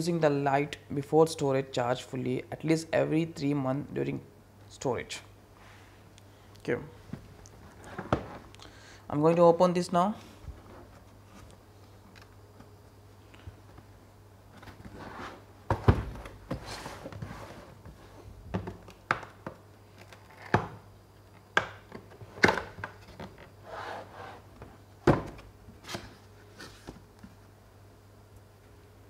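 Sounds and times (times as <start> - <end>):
cardboard rustling and scraping: 10.2 - 11.9, 14.5 - 18.3, 25.8 - 27.1.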